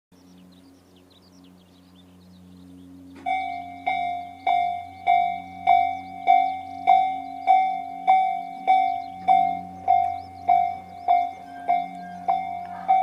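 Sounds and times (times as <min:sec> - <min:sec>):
small birds chirping: 0:00.2 - 0:13.0
level crossing warning bell: 0:03.2 - 0:13.0.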